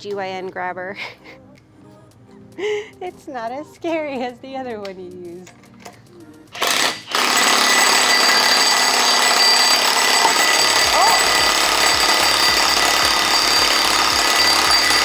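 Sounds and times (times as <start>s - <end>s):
impact wrench hammering: 6.6s - 15.0s.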